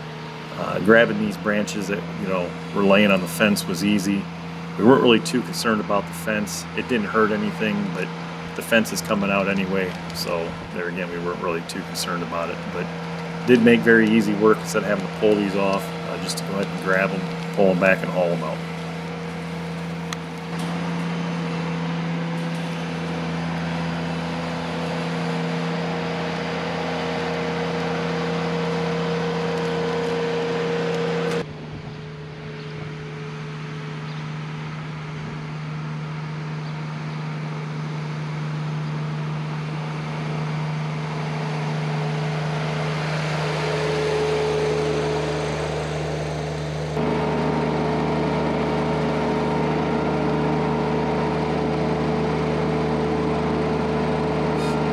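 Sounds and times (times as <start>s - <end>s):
tractor engine running: 0.0s - 20.8s, 32.0s - 54.9s.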